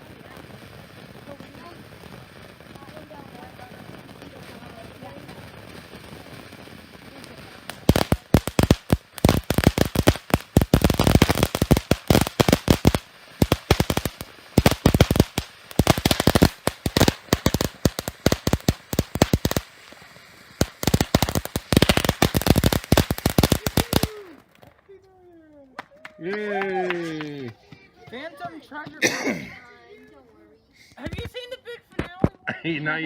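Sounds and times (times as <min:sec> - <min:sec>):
fireworks cracking: 0:00.0 - 0:33.0.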